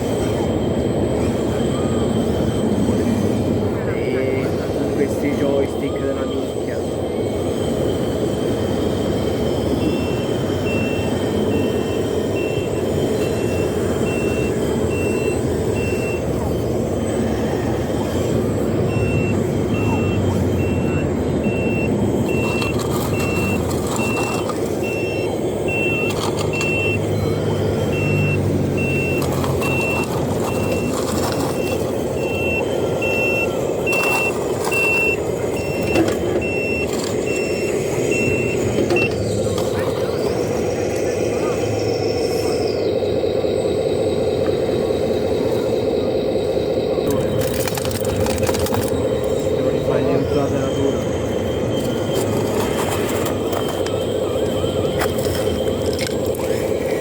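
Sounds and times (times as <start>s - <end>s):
low running noise: 0.0s - 57.0s
short high reversing beeps: 9.7s - 16.4s, 17.4s - 47.4s.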